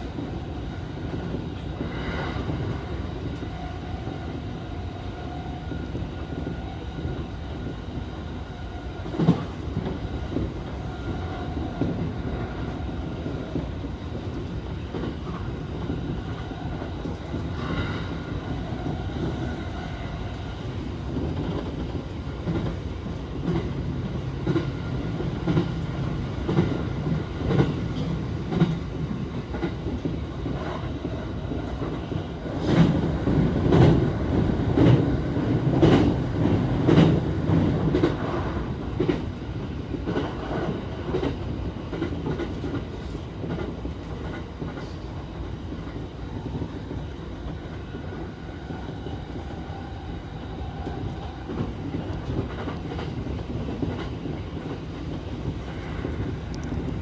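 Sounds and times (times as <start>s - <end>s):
train rumble: 0.0s - 57.0s.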